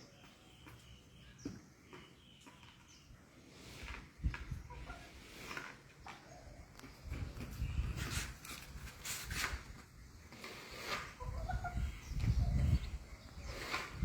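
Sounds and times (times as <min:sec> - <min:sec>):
wind rumble on microphone: 0:04.2 - 0:05.2, 0:06.5 - 0:10.2, 0:11.2 - 0:14.0.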